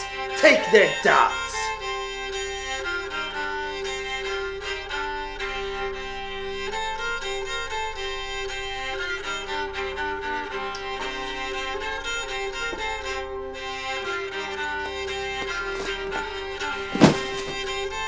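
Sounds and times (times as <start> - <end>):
violin music: 0.0 - 18.0.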